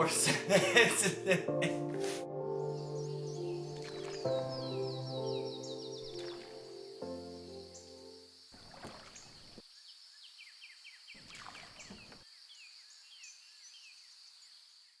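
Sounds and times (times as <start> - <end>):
birds chirping: 0.0 - 8.4
insects droning: 0.0 - 14.9.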